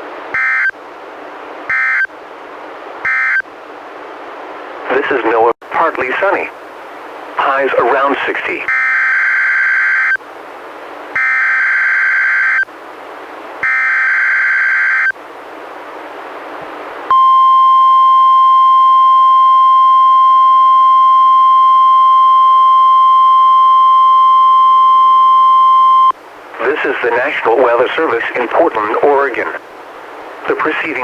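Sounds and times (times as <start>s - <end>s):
steady warning alarm tone: 0.4s - 0.8s, 1.7s - 2.1s, 3.0s - 3.4s, 8.7s - 10.2s, 11.2s - 12.7s, 13.6s - 15.2s, 17.1s - 26.2s.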